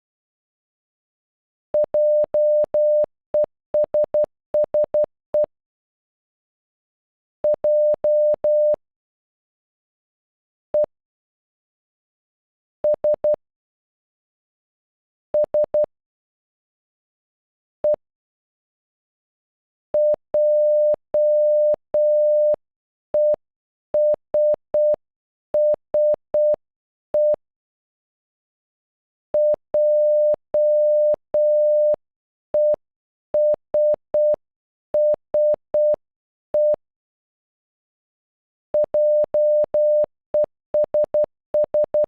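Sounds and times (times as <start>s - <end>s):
morse code beeps: 1.8s - 5.5s, 7.5s - 8.8s, 20.0s - 22.6s, 29.4s - 32.0s, 33.4s - 34.4s, 35.0s - 36.0s, 36.6s - 36.8s, 38.8s - 42.0s.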